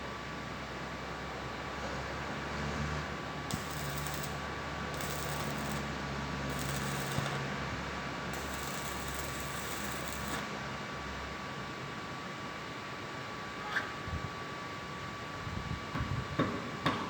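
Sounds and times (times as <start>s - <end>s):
steady electrical hum: 3.1s - 11.7s
welding arc crackling: 3.5s - 7.6s, 8.3s - 10.5s.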